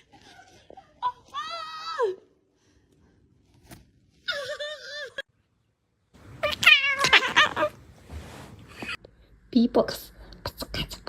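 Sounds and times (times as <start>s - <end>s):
cat meowing: 6.4s - 7.8s.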